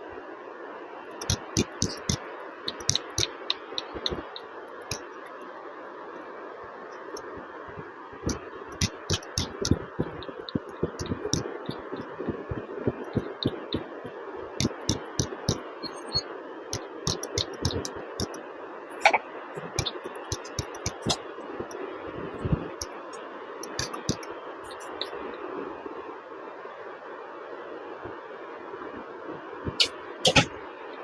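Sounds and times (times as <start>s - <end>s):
hands patting and tapping body: 1.2s - 3.3s.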